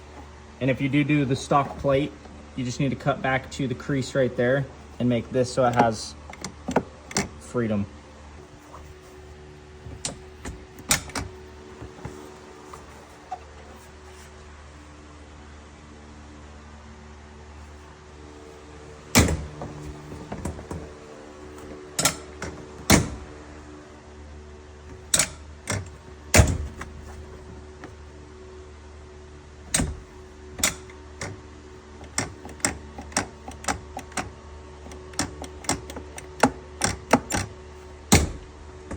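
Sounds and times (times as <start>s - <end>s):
steady low hum: 0.0s - 38.9s
door latch clicks and clunks: 9.9s - 13.4s, 19.1s - 21.0s, 21.6s - 23.3s, 25.0s - 27.4s, 29.7s - 31.4s, 32.0s - 34.3s, 34.9s - 37.5s, 38.1s - 38.9s.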